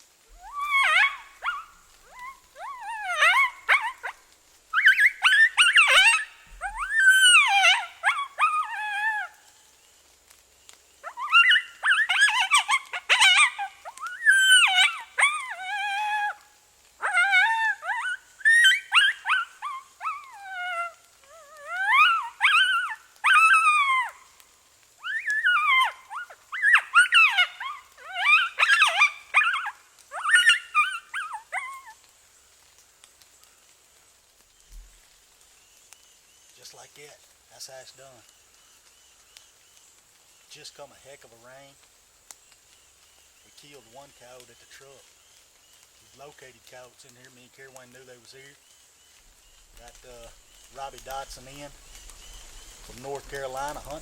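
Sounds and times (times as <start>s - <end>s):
animal distress cries from game call: 0.3s - 4.2s, 4.8s - 9.4s, 11.0s - 16.4s, 17.0s - 24.4s, 25.0s - 32.0s.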